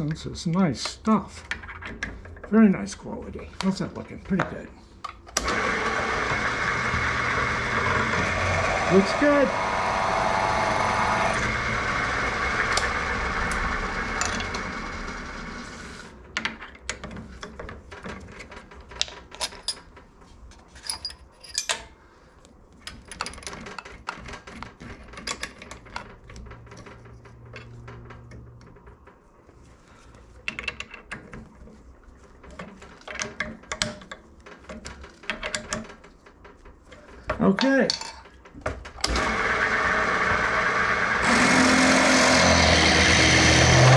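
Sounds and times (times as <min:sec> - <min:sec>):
drill press running: 0:05.4 - 0:16.1, 0:39.0 - 0:43.9
metal tools clinking: 0:20.7 - 0:21.9.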